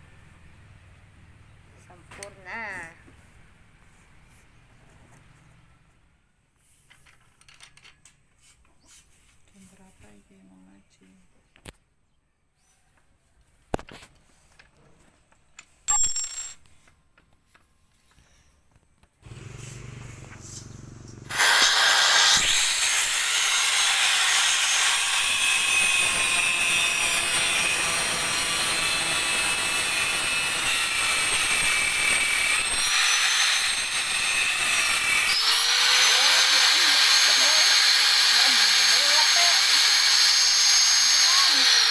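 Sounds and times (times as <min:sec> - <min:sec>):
angle grinder whining: 0:19.2 - 0:41.9.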